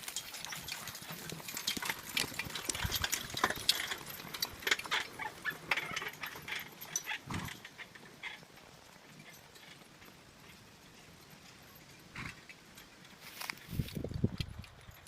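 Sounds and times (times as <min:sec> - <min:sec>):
timber cart knocking and clicking: 0:00.0 - 0:08.4
horse hooves clopping: 0:00.0 - 0:15.0.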